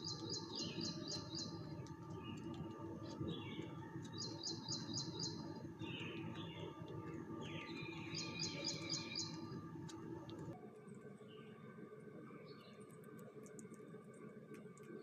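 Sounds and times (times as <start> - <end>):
small birds singing and chirping: 0.0 - 10.6, 12.4 - 13.0
steady low hum: 0.0 - 13.1.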